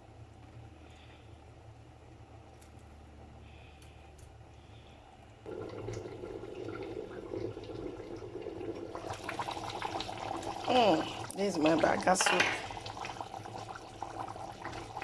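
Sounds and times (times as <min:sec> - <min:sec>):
soup bubbling on the boil: 0:05.5 - 0:15.0.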